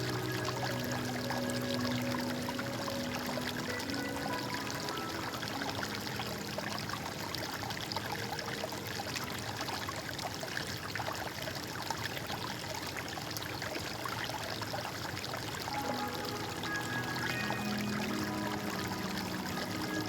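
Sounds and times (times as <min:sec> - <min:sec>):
soft background music: 0:00.0 - 0:10.5, 0:15.6 - 0:20.0
stream water trickling: 0:00.0 - 0:20.0.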